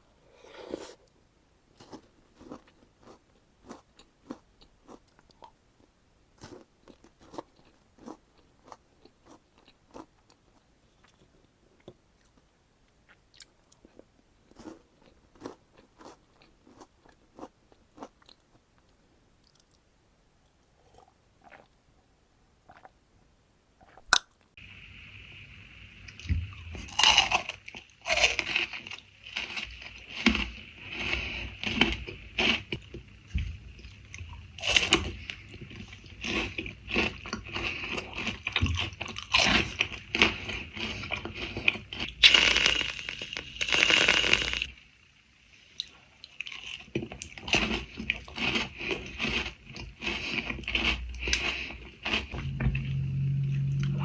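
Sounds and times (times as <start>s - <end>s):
crunchy chocolate chewing: 1.8s - 5.6s, 6.4s - 12.4s, 13.1s - 18.6s, 26.7s - 44.7s, 46.4s - 52.4s.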